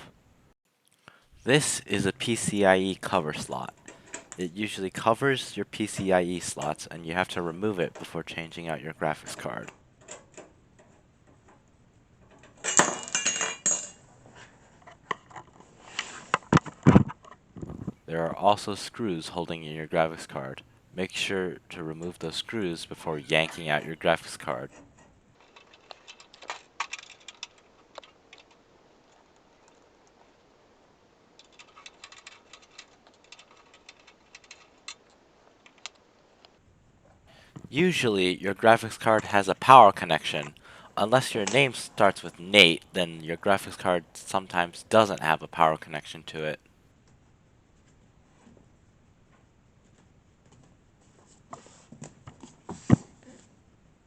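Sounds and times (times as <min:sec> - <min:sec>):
sheet metal clinking and ringing: 0:12.6 - 0:14.0.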